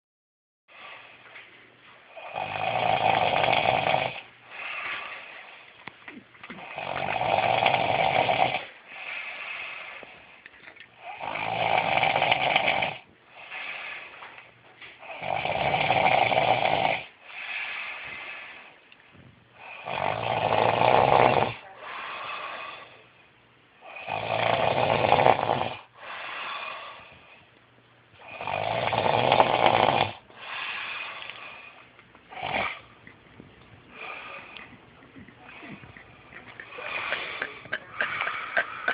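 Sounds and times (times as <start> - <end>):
person snoring: 2.2 - 5.5, 6.6 - 10.0, 11.0 - 14.0, 15.0 - 18.0, 19.6 - 23.0, 23.8 - 27.1, 28.2 - 33.0, 33.9 - 38.9
quiet breath sound: 4.2 - 7.0, 8.6 - 11.2, 13.2 - 15.2, 17.0 - 19.9, 21.6 - 24.1, 25.8 - 27.6, 30.2 - 38.9.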